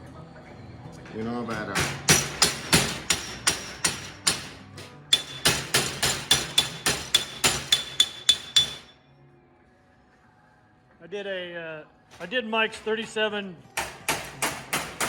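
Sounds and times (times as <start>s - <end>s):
hammer striking metal: 1.5s - 9.0s, 13.8s - 15.0s.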